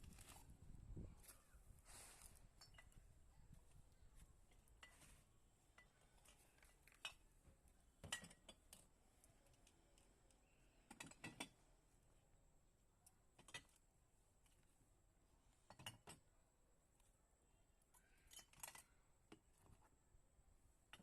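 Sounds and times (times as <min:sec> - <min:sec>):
faint clinks and knocks: 0:02.2 - 0:03.8, 0:04.4 - 0:11.7, 0:17.8 - 0:19.9.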